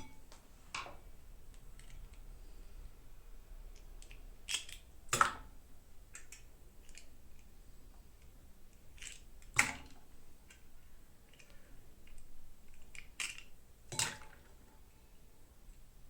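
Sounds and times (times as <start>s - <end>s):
toy packaging clicks and rustles: 1.5s - 2.3s, 3.7s - 4.8s, 6.1s - 7.5s, 8.9s - 9.5s, 11.3s - 13.5s.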